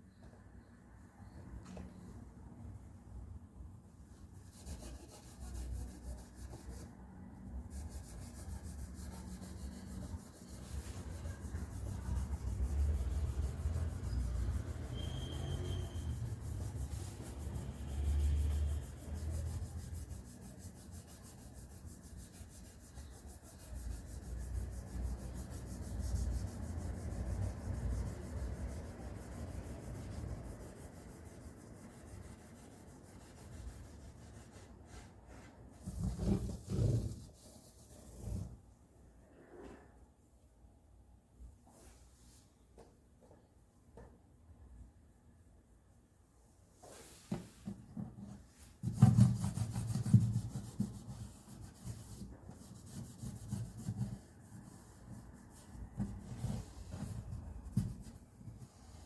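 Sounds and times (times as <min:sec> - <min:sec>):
sandpaper rubbing on wood: 0:04.4 - 0:06.9, 0:07.6 - 0:35.0.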